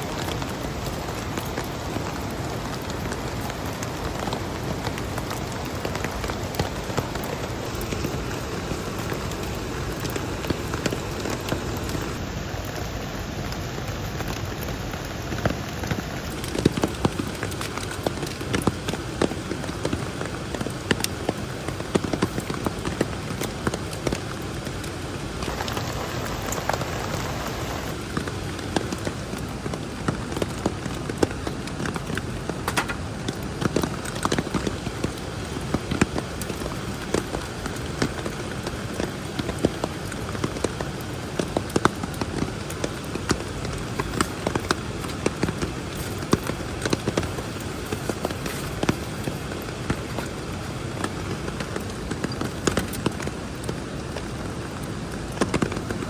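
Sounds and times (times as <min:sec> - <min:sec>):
raindrops tapping a surface: 0:00.0 - 0:56.0
steady rain falling: 0:00.0 - 0:56.0.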